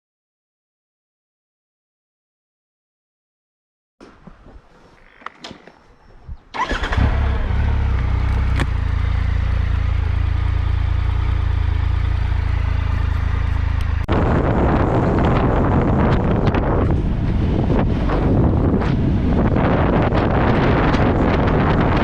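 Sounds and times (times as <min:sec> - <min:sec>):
wind on microphone: 0:05.8 - 0:07.1, 0:13.0 - 0:22.0
motorcycle engine starting and idling: 0:06.5 - 0:22.0.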